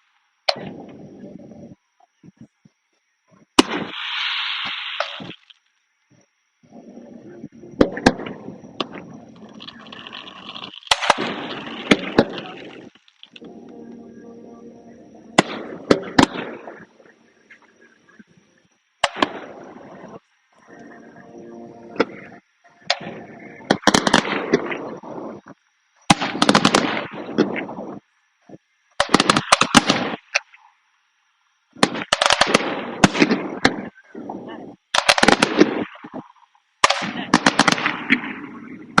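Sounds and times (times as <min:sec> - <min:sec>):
fireworks crackling hiss: 0:03.5 - 0:05.7, 0:06.8 - 0:13.8, 0:21.8 - 0:30.4, 0:31.8 - 0:39.0
fireworks bangs: 0:03.6 - 0:05.5, 0:07.7 - 0:14.0, 0:15.2 - 0:18.3, 0:19.0 - 0:21.2, 0:21.9 - 0:28.0, 0:29.0 - 0:30.4, 0:31.8 - 0:33.9, 0:35.0 - 0:39.0.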